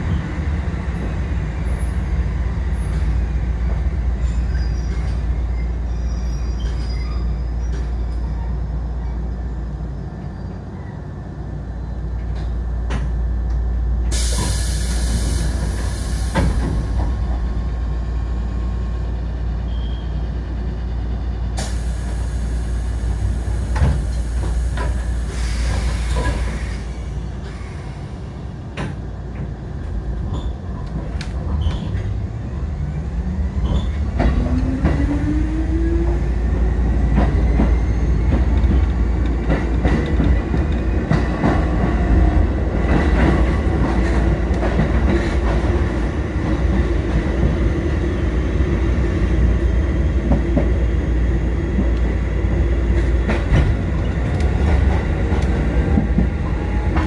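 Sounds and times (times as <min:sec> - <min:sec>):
air hiss: 0:14.1 - 0:16.8, 0:21.6 - 0:27.0.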